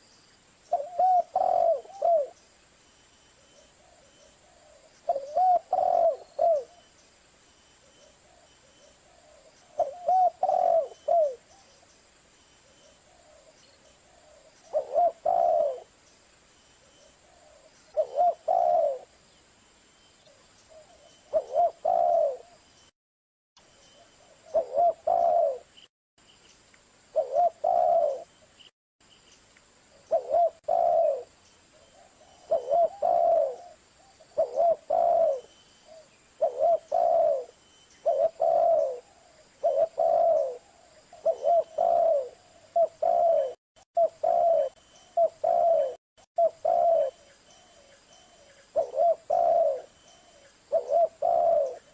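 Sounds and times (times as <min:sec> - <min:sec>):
dove cooing: 0:00.7 - 0:02.4, 0:03.8 - 0:06.8, 0:08.0 - 0:11.7, 0:12.9 - 0:16.0, 0:17.1 - 0:19.1, 0:20.7 - 0:22.6, 0:24.2 - 0:25.7, 0:27.1 - 0:28.4, 0:30.0 - 0:51.9.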